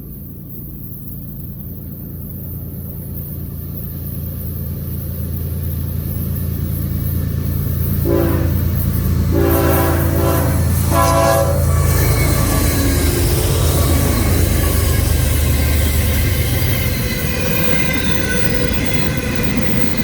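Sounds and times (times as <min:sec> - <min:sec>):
diesel locomotive engine rumble: 0:00.0 - 0:20.0
locomotive air horn blasts: 0:08.0 - 0:16.7.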